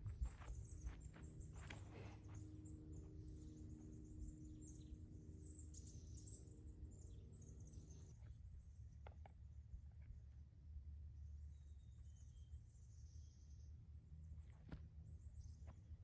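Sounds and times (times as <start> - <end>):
birds chirping: 0.0 - 8.3
low rumble and hum: 0.0 - 16.0.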